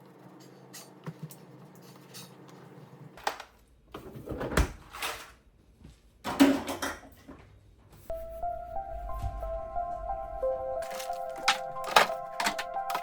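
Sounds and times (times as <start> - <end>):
background music with held notes: 8.1 - 13.0
household items clattering: 10.8 - 13.0.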